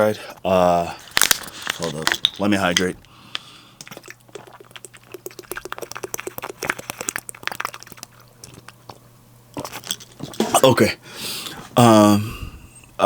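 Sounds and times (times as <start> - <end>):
person gulping water: 3.3 - 9.0.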